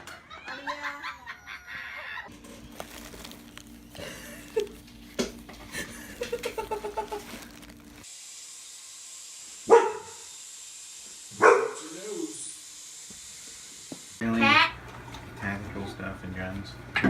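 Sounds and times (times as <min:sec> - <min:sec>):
dog barking loudly: 0:09.7 - 0:10.2, 0:11.4 - 0:11.8.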